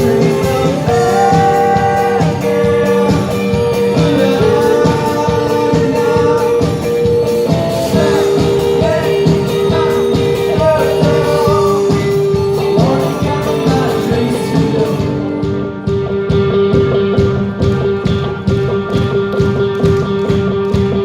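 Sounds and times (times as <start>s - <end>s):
person singing: 0.0s - 16.0s
drum beat: 0.0s - 21.0s
electric guitars: 0.0s - 21.0s.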